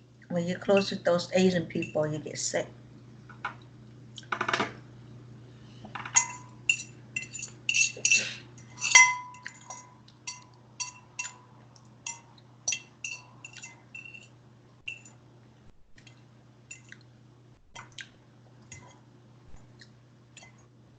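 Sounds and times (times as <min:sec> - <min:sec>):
low steady hum: 0:00.0 - 0:20.9
utensil clinking against dish: 0:06.0 - 0:11.4, 0:12.0 - 0:14.3.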